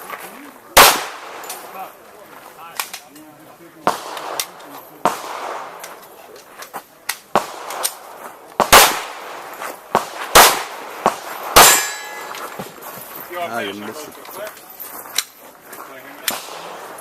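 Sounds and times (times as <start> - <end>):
pistol shots: 0.8 - 1.8, 3.8 - 6.0, 7.1 - 12.4, 16.2 - 17.0.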